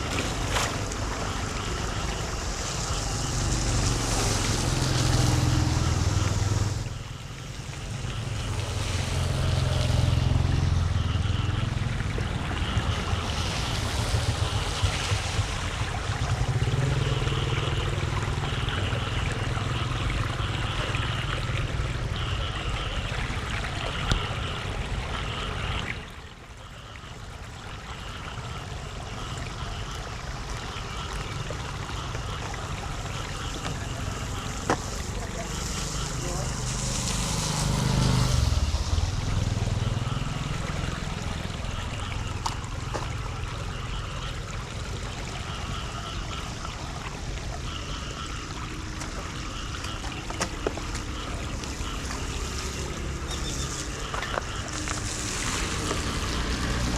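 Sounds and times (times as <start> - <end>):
floodwater rushing into storm drain: 0.0 - 56.9
wind on microphone: 11.6 - 16.5.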